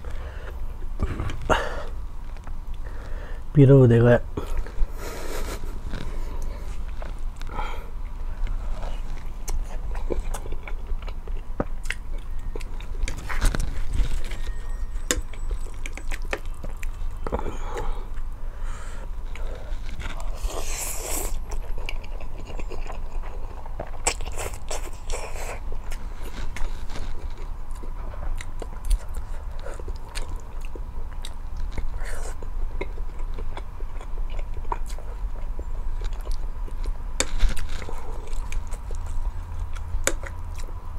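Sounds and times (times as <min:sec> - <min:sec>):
person chewing with mouth smacks: 0:04.4 - 0:18.4, 0:19.3 - 0:40.7.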